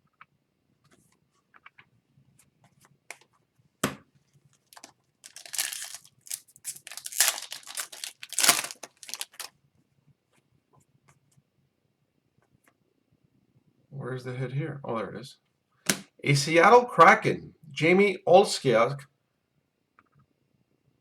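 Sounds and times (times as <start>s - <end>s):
foil wrapper tearing and crinkling: 4.7s - 9.5s
cards snapping: 4.8s - 9.5s, 15.9s - 16.1s.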